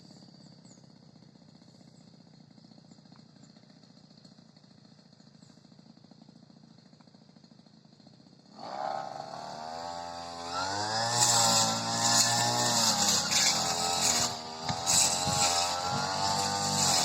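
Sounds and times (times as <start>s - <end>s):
brush cutter engine revving: 8.0s - 17.0s.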